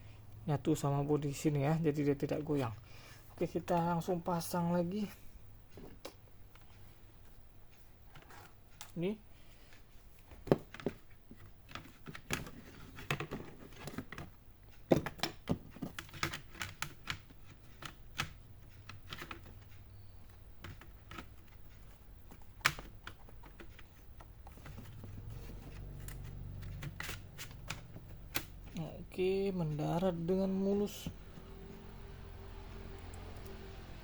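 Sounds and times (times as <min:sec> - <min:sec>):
plastic laptop parts clicking: 0:10.4 - 0:28.8
low hum: 0:31.0 - 0:34.0.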